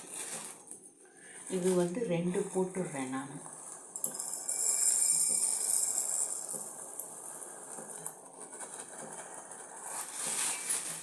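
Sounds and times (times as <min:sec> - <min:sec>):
rice grains being poured: 0:03.9 - 0:08.2.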